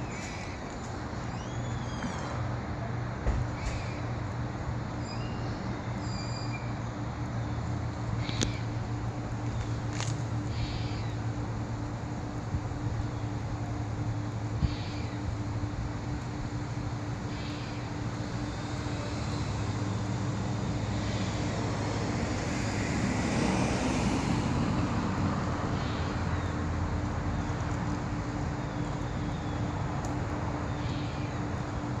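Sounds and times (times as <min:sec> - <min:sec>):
road traffic noise: 0:00.0 - 0:32.0
vehicle passing: 0:18.7 - 0:27.3.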